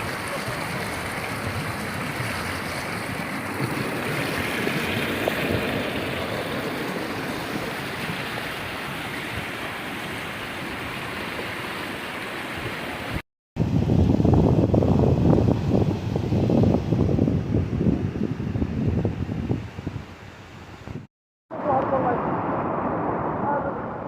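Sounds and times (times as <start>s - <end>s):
flowing rainwater rushing: 0.0s - 13.2s.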